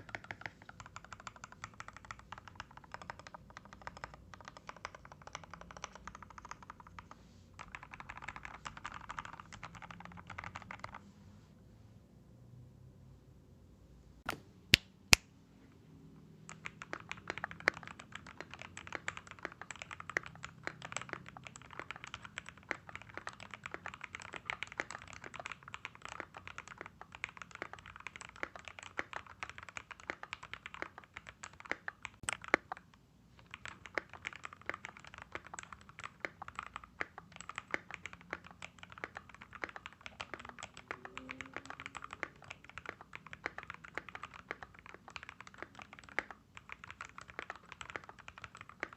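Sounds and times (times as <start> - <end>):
fast typing on mechanical keyboard: 0.0 - 11.0, 16.5 - 48.9.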